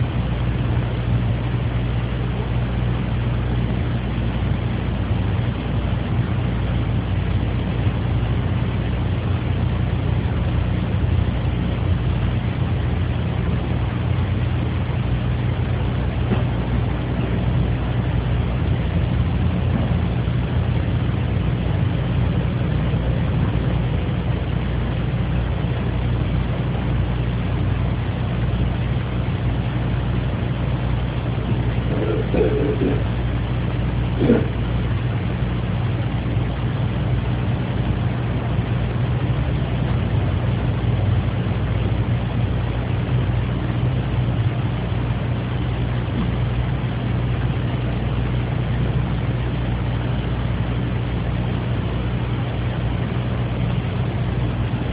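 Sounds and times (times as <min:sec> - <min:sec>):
low room hum: 0:00.0 - 0:54.9
man clearing throat: 0:31.9 - 0:33.1, 0:34.2 - 0:34.6.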